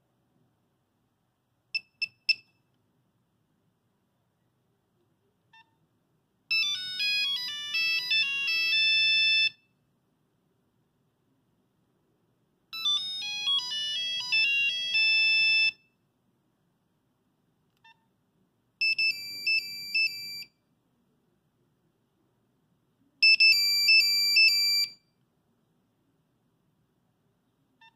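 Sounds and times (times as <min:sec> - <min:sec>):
mobile phone beep: 0:01.8 - 0:02.6, 0:06.5 - 0:09.6, 0:12.8 - 0:15.9, 0:18.8 - 0:20.5, 0:23.2 - 0:25.0
monophonic ringtone melody: 0:06.5 - 0:09.6, 0:12.8 - 0:15.8.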